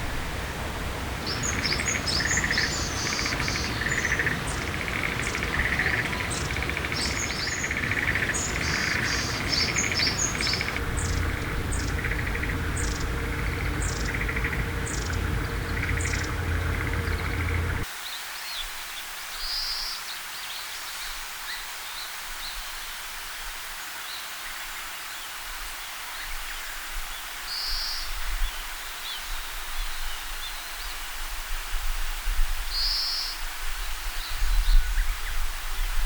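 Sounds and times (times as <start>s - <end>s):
low background rumble: 0.2s - 17.8s
bird calling buzzy notes: 1.0s - 17.8s.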